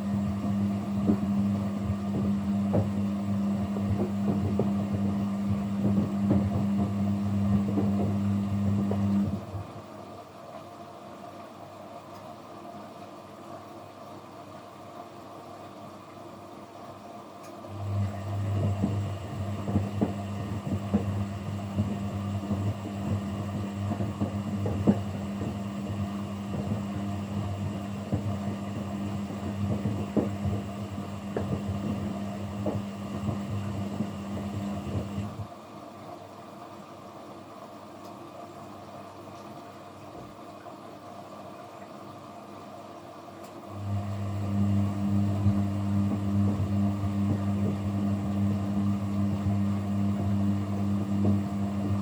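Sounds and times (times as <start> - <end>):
washing machine drum motor: 0.0 - 10.0, 17.5 - 35.6, 43.1 - 52.0
tumbling load knocking: 18.5 - 35.3.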